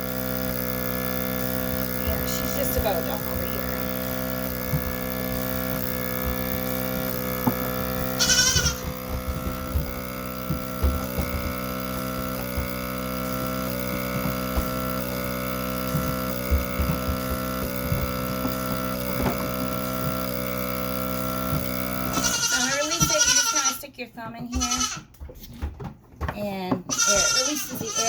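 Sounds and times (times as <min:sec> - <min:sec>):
milking machine pulsing: 0:00.0 - 0:25.7, 0:26.4 - 0:28.0
goat bleating: 0:08.1 - 0:09.0, 0:22.1 - 0:25.1, 0:26.9 - 0:28.0.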